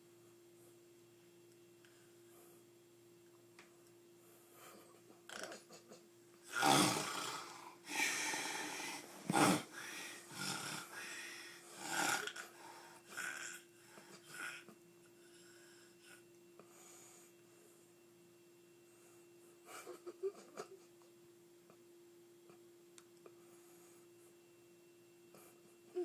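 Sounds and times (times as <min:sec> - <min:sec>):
steady low hum: 0:00.0 - 0:26.0
heavy snoring: 0:06.5 - 0:13.6.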